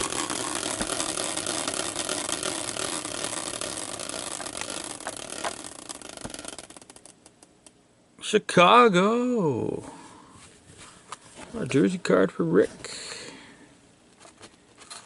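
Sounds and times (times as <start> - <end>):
prize wheel pointer clicking: 0.0 - 7.4.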